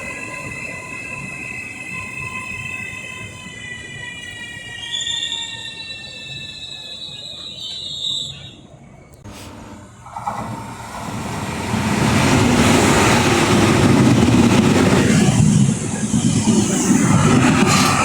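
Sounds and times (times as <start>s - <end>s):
train wheel squeal: 0.0s - 9.5s
train rushing: 9.2s - 18.0s.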